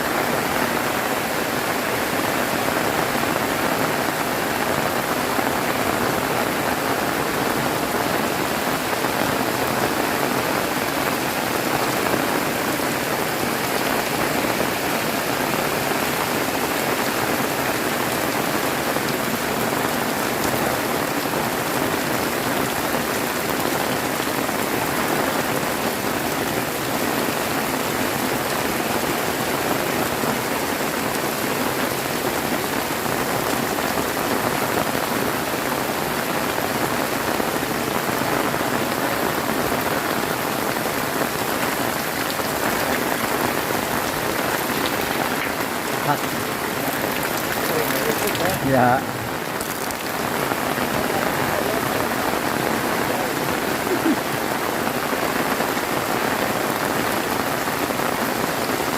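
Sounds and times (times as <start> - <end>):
heavy rain pouring: 0.0 - 58.9.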